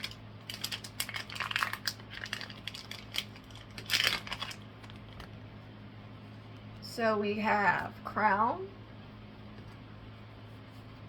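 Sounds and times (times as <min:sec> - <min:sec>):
packaging crinkling and rustling: 0:00.0 - 0:05.3.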